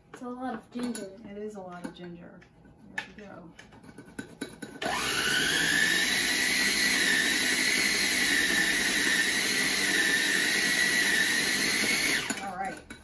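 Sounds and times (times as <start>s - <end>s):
electric blender whining: 4.8s - 12.8s.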